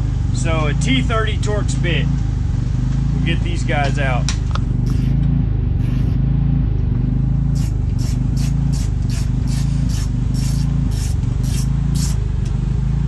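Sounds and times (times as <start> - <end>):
low motor-like hum: 0.0 - 13.0
ratchet clicking: 7.6 - 12.6.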